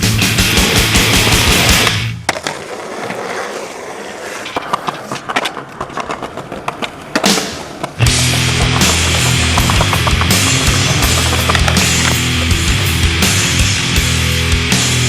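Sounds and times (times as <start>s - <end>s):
loud rock music: 0.0s - 2.2s, 8.0s - 15.0s
skateboard wheels rolling on pavement: 0.0s - 15.0s
skateboard clacking on ground: 0.6s - 12.7s.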